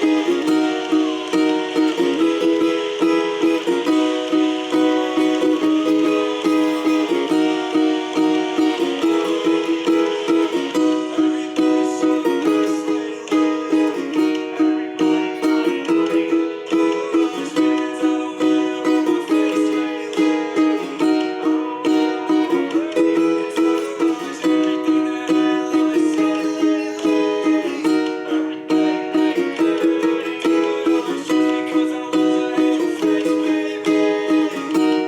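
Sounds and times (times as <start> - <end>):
ukulele strumming: 0.0 - 35.0.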